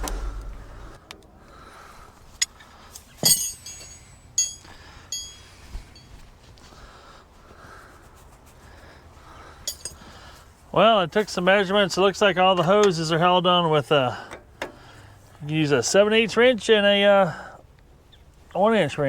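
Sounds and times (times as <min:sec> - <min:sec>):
low rumble: 0:00.0 - 0:01.3
hand tools clinking on metal: 0:02.4 - 0:06.2, 0:09.6 - 0:10.2.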